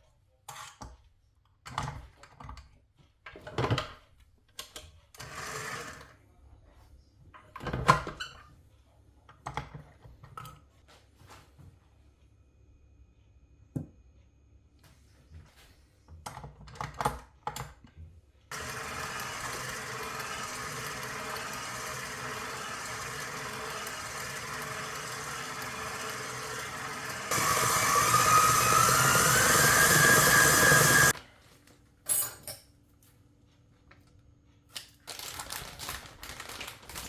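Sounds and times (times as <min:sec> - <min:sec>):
electric mixer whisking: 0:18.5 - 0:31.2.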